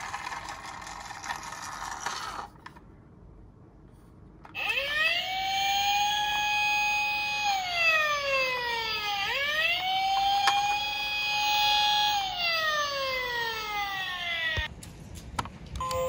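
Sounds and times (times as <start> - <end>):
wailing police siren: 4.6 - 14.7.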